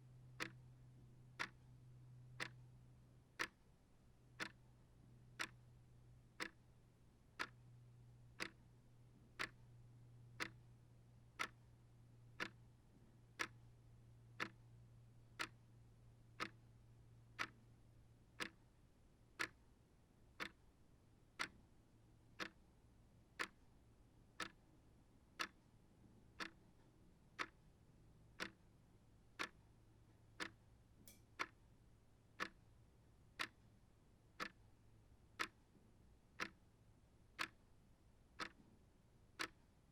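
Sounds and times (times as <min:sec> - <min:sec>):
clock ticking: 0:01.4 - 0:01.6, 0:03.4 - 0:03.6, 0:04.4 - 0:04.6, 0:05.4 - 0:05.6, 0:06.4 - 0:06.6, 0:08.4 - 0:08.6, 0:09.4 - 0:09.6, 0:11.4 - 0:11.6, 0:12.4 - 0:12.6, 0:13.4 - 0:13.6, 0:14.4 - 0:14.6, 0:15.4 - 0:15.6, 0:16.4 - 0:16.6, 0:17.4 - 0:17.6, 0:18.4 - 0:18.6, 0:20.4 - 0:20.6, 0:21.4 - 0:21.6, 0:23.4 - 0:23.6, 0:27.4 - 0:27.6, 0:29.4 - 0:29.6, 0:30.4 - 0:31.6, 0:33.4 - 0:33.6, 0:34.4 - 0:34.6, 0:35.4 - 0:35.6, 0:36.4 - 0:36.6, 0:37.4 - 0:37.6, 0:38.4 - 0:38.6, 0:39.4 - 0:39.6.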